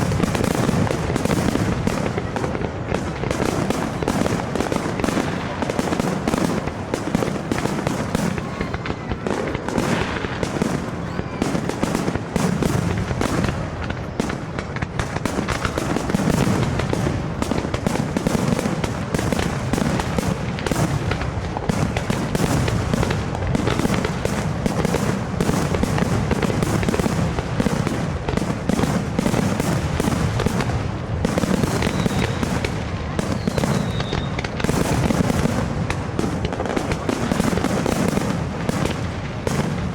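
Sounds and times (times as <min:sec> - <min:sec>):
fireworks bangs and crackles: 0:00.0 - 0:39.9
falling firework whistles: 0:31.4 - 0:35.1.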